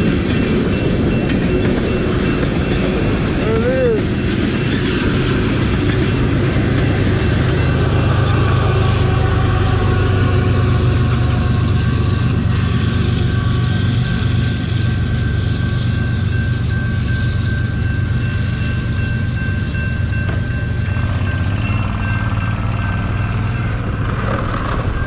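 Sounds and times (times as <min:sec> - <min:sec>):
freight train rumbling past: 0:00.0 - 0:25.0.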